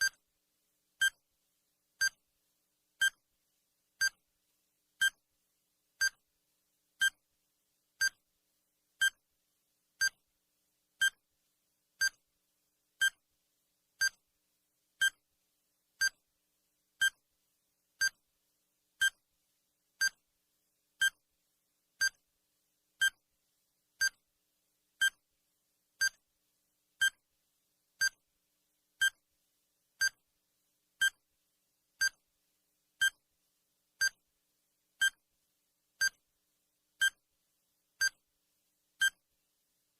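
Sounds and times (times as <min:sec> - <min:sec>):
electronic timer beeps: 0:39.0 - 0:39.2.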